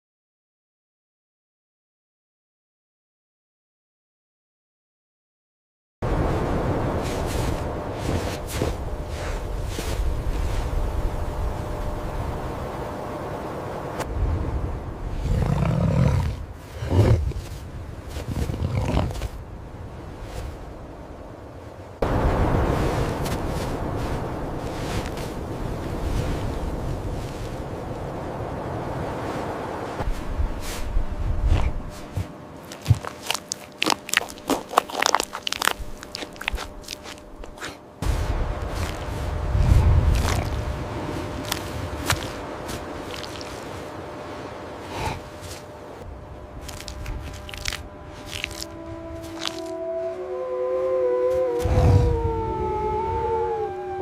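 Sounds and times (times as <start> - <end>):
low rumble: 6.0 - 33.1, 34.3 - 54.0
deep animal growls: 15.1 - 19.4, 51.6 - 52.3
sharp crunches and clicks: 32.6 - 37.8, 46.6 - 49.8.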